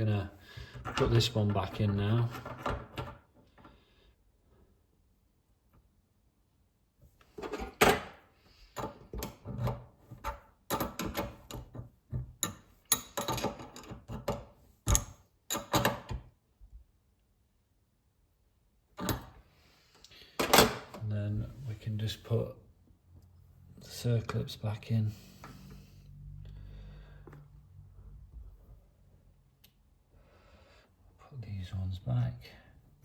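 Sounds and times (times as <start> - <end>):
metal parts clicking and clattering: 12.4 - 16.1.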